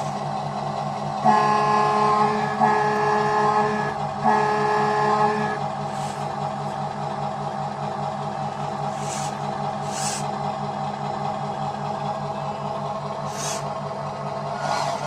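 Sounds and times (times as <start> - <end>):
diesel engine idling: 0.0 - 15.0
truck air horn: 1.2 - 6.1, 14.5 - 15.0
short air hisses: 8.9 - 10.3, 13.3 - 13.7.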